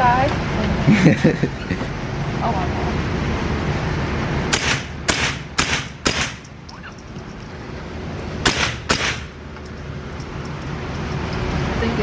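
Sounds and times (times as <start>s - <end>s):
gunshots: 4.5s - 6.5s, 8.4s - 9.4s.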